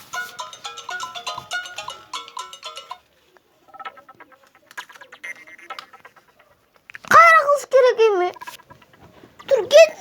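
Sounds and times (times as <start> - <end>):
phone ringtone melody: 0.0 - 3.1.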